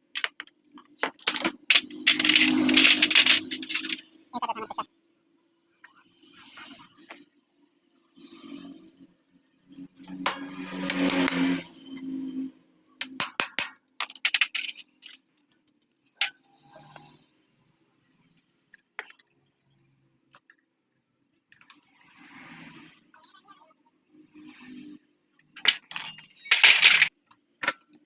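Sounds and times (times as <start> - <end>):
metal tools clinking: 0.2 - 4.0, 14.0 - 15.8, 25.6 - 27.1.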